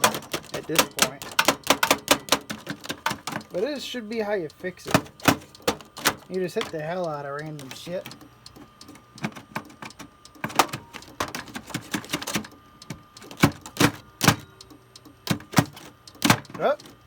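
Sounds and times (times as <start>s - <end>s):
knocks on computer parts: 0.0s - 3.5s, 4.9s - 6.8s, 9.2s - 14.5s, 15.2s - 17.0s.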